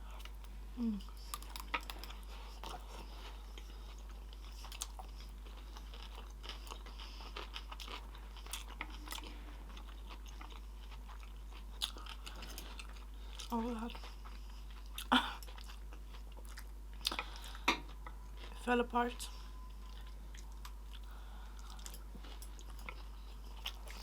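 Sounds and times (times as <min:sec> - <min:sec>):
crunchy chewing: 0:00.0 - 0:18.6, 0:19.3 - 0:24.0.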